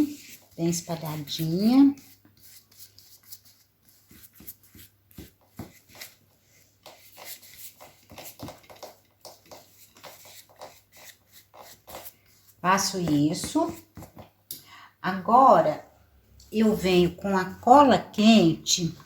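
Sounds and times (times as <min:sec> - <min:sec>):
hands rustling on cardboard: 0:00.0 - 0:14.3.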